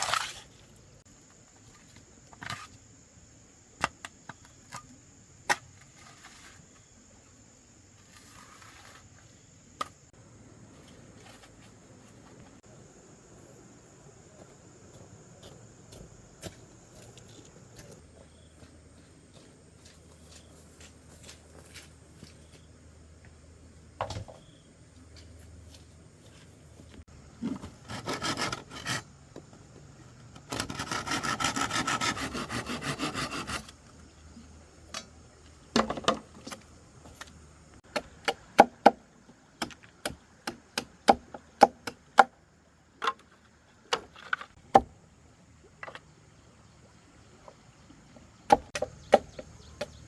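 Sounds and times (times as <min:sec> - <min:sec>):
hand saw sawing wood: 0:27.6 - 0:29.1, 0:30.5 - 0:33.8
rasping strokes on wood: 0:27.8 - 0:29.1, 0:30.5 - 0:33.7.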